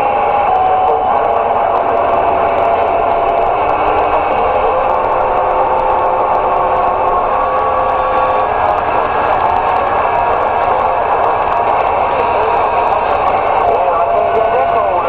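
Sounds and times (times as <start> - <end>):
radio static hiss: 0.0 - 15.0
thin whistling radio tones: 0.0 - 15.0.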